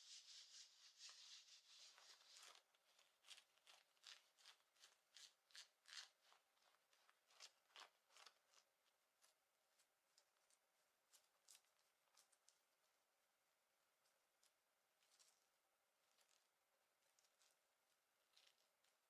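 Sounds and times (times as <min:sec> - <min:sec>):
fingernails scratching fabric: 0:00.0 - 0:08.7.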